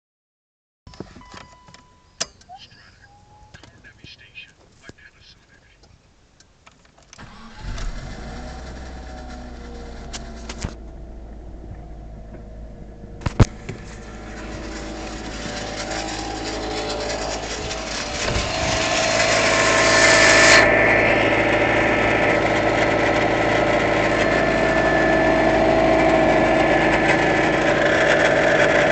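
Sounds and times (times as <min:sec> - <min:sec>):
car engine starting and running: 0:00.9 - 0:28.9
turbo whine: 0:07.2 - 0:28.9.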